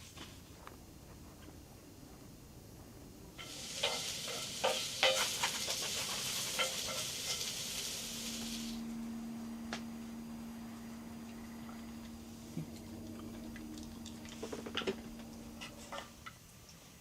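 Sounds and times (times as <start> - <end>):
steady low hum: 0.0 - 16.7
hissing noise: 3.4 - 16.3.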